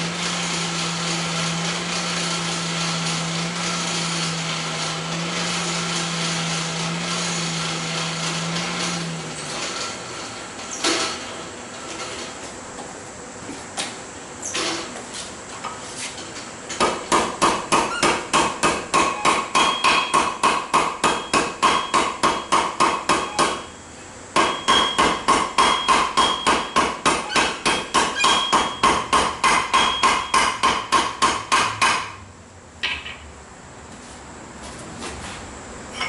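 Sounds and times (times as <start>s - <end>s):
hammer ringing on anvil: 18.9s - 23.8s, 24.4s - 30.8s.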